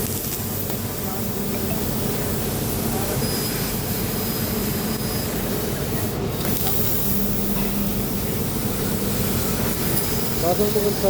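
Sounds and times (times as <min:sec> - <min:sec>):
cutting machine hissing: 0:00.0 - 0:11.0
low hum: 0:06.8 - 0:10.5.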